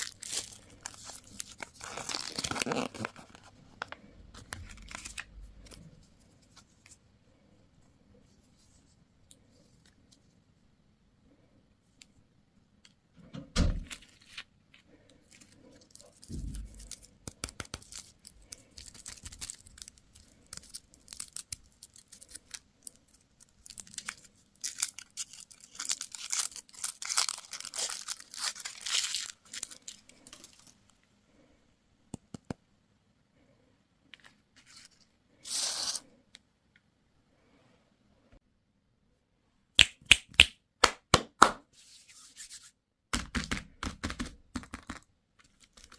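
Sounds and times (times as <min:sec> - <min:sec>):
packaging tearing and crinkling: 0:00.0 - 0:03.5, 0:15.9 - 0:30.7, 0:45.4 - 0:45.9.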